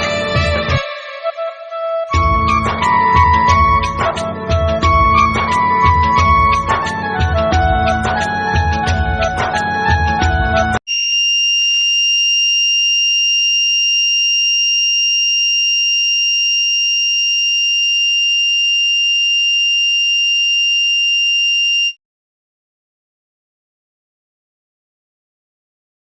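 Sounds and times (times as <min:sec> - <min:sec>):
high-pitched alarm buzzer: 0:10.9 - 0:22.0.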